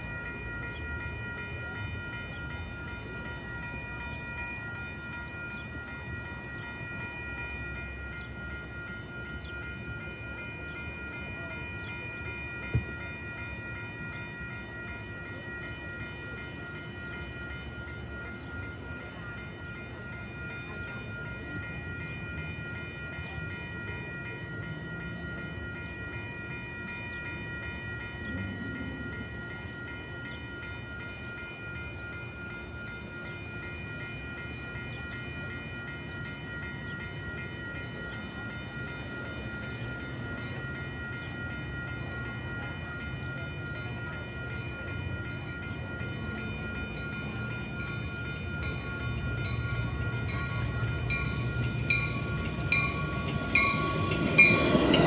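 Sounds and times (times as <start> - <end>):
train rumbling over rails: 0.0 - 55.0
rail clicking: 47.7 - 55.0.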